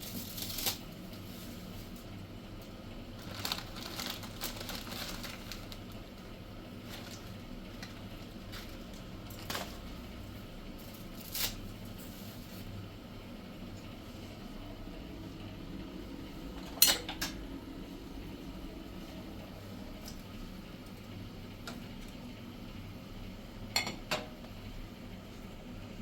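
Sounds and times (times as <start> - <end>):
rustling and handling noises: 0.0 - 12.9
low steady hum: 0.0 - 26.0.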